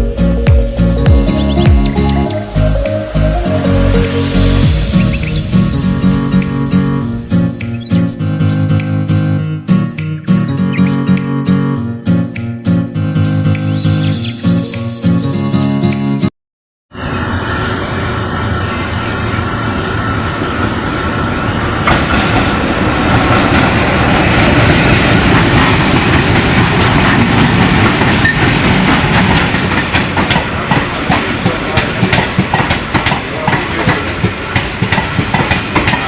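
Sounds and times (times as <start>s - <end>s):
train rumbling on track: 0.0s - 11.0s, 16.9s - 36.0s
wheels clacking over rail joints: 20.4s - 36.0s.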